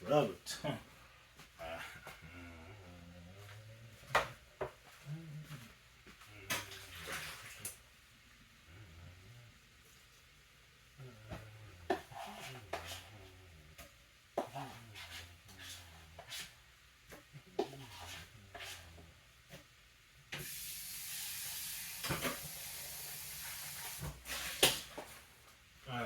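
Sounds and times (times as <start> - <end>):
sizzling hiss of frying: 19.6 - 25.3.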